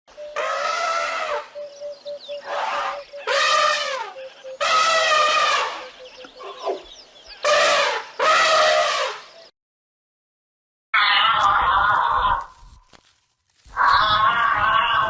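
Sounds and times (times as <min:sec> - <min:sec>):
animal calling: 0:00.1 - 0:09.3.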